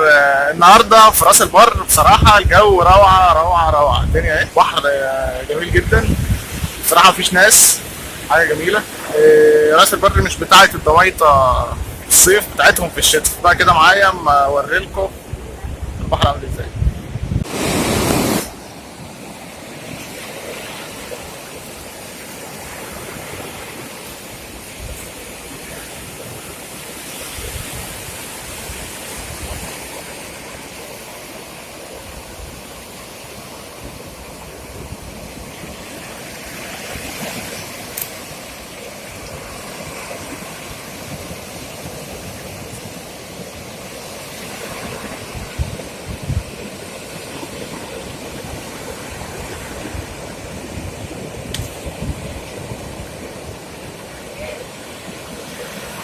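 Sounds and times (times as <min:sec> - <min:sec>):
sea waves washing on beach: 0:00.0 - 0:56.0.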